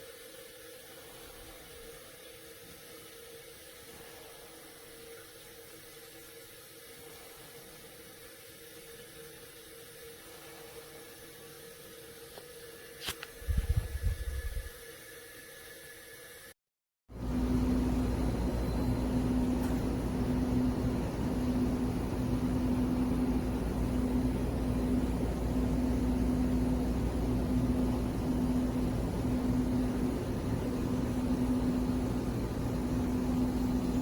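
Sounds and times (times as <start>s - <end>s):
low mechanical drone: 13.0s - 14.8s, 17.2s - 34.0s.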